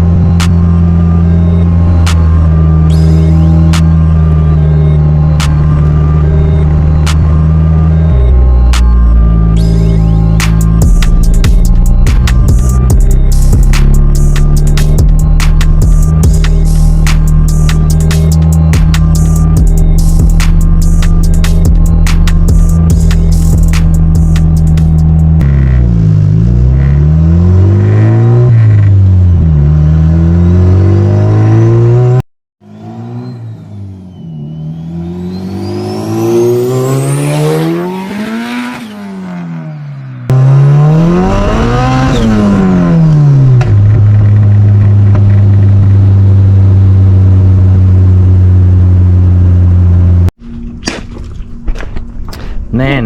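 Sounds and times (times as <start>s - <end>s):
high rising whine: 0.0s - 25.4s
car engine revving: 0.0s - 53.0s.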